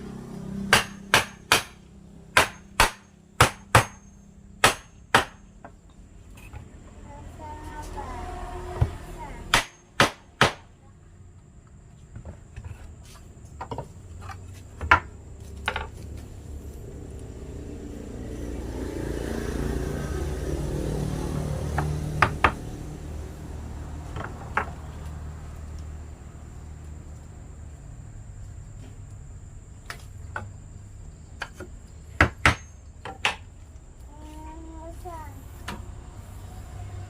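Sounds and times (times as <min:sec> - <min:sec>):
sharp knocks: 0:00.7 - 0:05.5.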